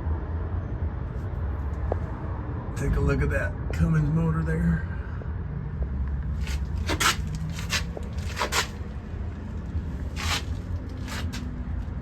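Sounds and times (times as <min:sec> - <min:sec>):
short rustling noises: 0:06.4 - 0:09.0, 0:09.9 - 0:12.0.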